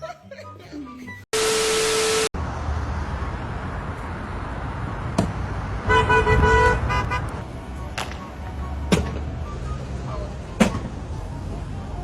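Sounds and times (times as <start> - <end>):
car horn honking: 5.8 - 7.4.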